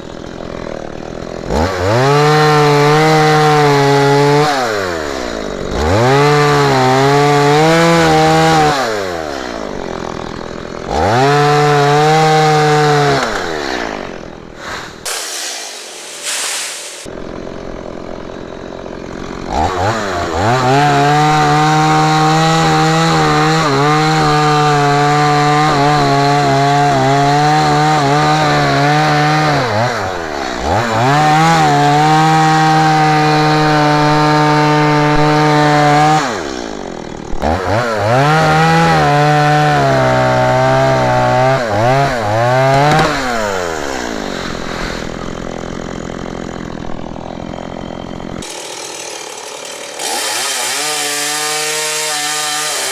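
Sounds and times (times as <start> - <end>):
chainsaw revving and cutting wood: 0.0 - 52.9.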